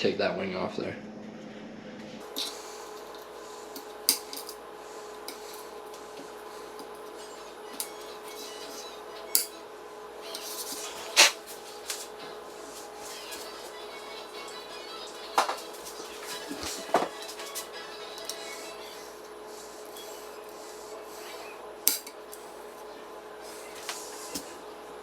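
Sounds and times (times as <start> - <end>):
faint steady hum: 0.0 - 25.0
metal tools clinking and tapping: 4.1 - 4.6, 9.3 - 9.6, 21.9 - 22.2.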